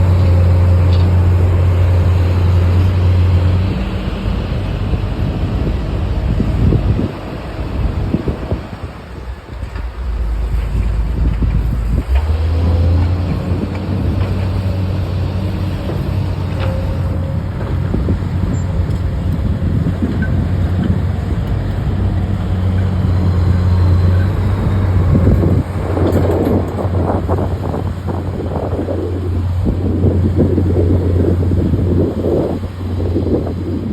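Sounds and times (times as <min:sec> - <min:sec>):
diesel engine droning: 0:00.0 - 0:33.9
rough noisy rumble: 0:00.0 - 0:33.9
wind noise on microphone: 0:00.0 - 0:33.9.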